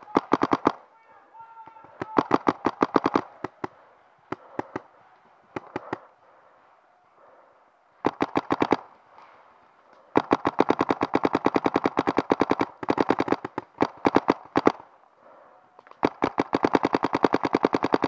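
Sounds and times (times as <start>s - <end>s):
paintball marker firing rapidly: 0.0s - 0.9s, 1.7s - 6.1s, 8.0s - 9.2s, 9.9s - 14.9s, 15.8s - 18.0s.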